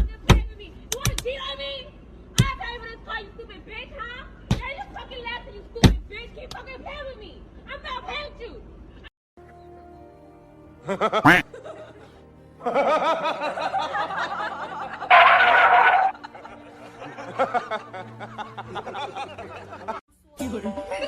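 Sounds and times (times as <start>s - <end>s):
background music: 9.4s - 21.0s
wavering laugh-like vocals: 10.8s - 20.0s.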